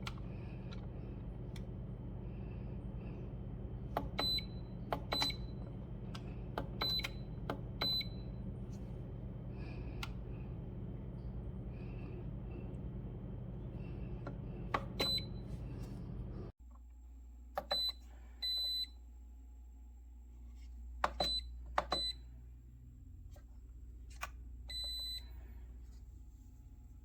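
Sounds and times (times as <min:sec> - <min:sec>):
kettle electronic beeps: 0:04.1 - 0:05.6, 0:06.8 - 0:08.4, 0:14.8 - 0:15.6.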